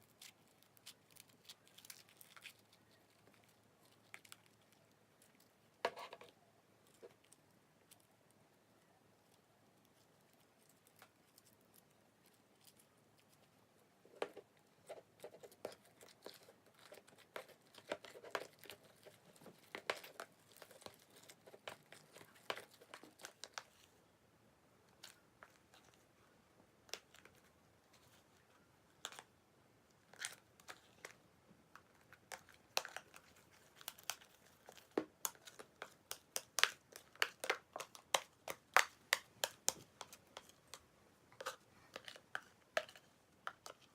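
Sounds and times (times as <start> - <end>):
slime with snack crackling: 0.0 - 5.8, 31.8 - 40.8.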